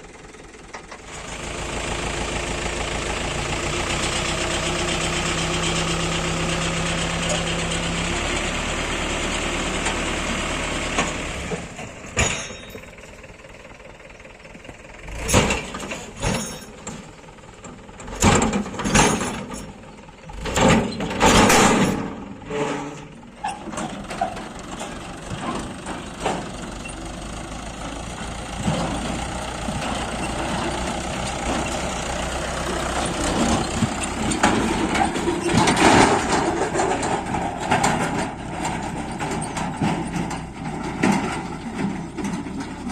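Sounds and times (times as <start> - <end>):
backhoe diesel engine running: 0.0 - 42.9
loud short engine surges: 15.0 - 16.8, 20.3 - 24.3, 25.3 - 42.9.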